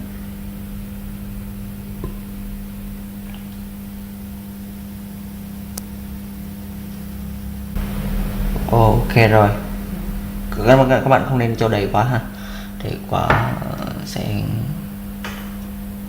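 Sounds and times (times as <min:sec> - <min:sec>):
electrical hum: 0:00.0 - 0:16.0.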